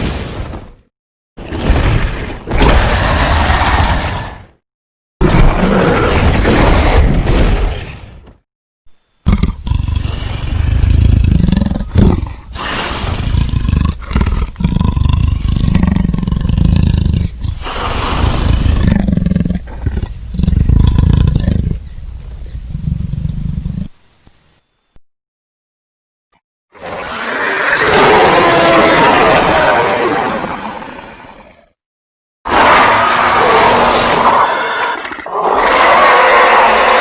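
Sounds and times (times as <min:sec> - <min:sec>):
dragon roars and growls: 0:26.8 - 0:31.5, 0:32.5 - 0:37.0.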